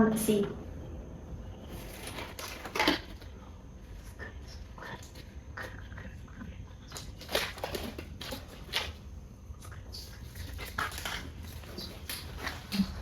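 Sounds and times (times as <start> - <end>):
rubbery glove rustles and squeaks: 10.0 - 13.0.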